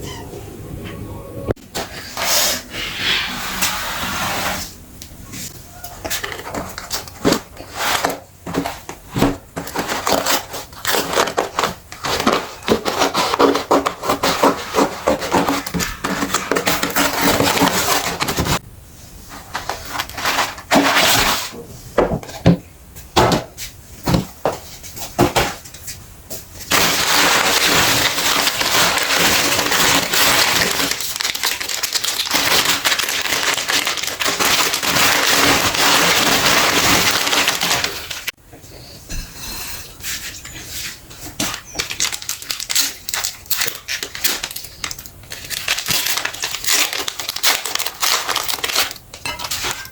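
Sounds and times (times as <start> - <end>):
meat grinder cracking and grinding: 26.7 - 38.3, 41.4 - 49.9.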